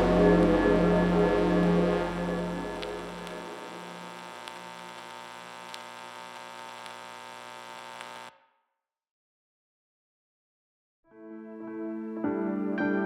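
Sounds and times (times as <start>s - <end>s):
ambient drone music: 0.0s - 4.2s
faint clicks: 4.2s - 7.1s.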